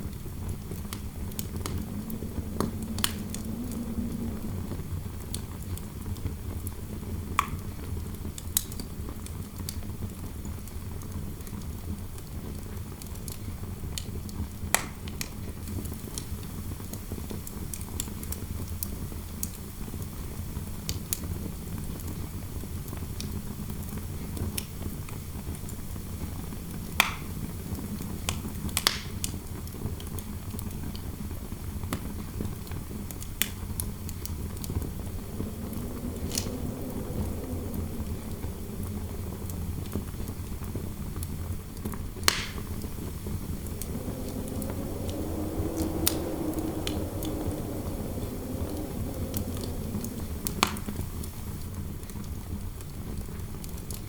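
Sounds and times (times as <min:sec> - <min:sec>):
low rumble of wind: 0:00.0 - 0:54.0
fire crackling with sharp pops: 0:00.7 - 0:05.5, 0:33.4 - 0:40.7, 0:41.8 - 0:51.4.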